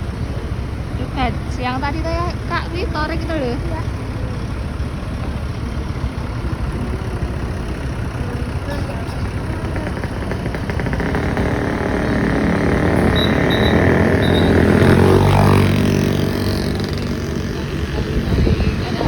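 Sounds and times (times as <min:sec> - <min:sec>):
vehicle engine passing: 0:00.0 - 0:19.0
high-pitched chirps: 0:13.0 - 0:15.2.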